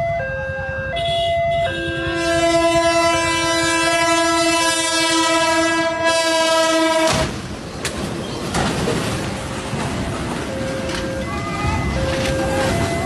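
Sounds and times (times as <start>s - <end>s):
train rushing rumble: 0.9s - 13.0s
train horn chord: 1.0s - 7.3s.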